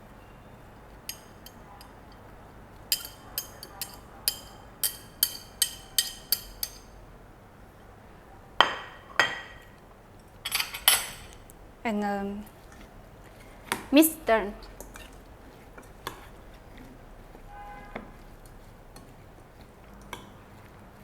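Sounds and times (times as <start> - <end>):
utensil clinking against bowl: 1.0 - 7.0, 10.4 - 11.4.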